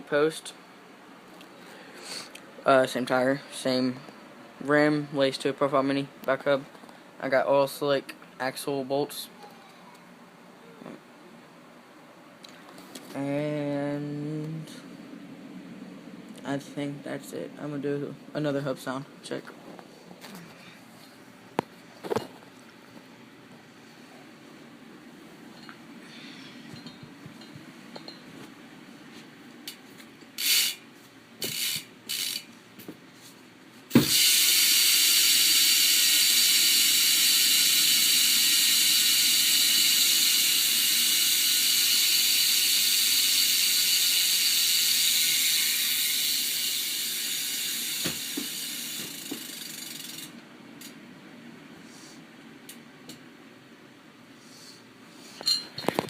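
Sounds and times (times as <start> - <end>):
freewheeling hub buzzing: 30.3 - 30.8, 31.4 - 32.6, 34.0 - 50.9
bike hub clicking: 30.4 - 30.8, 31.4 - 32.5, 34.1 - 51.0.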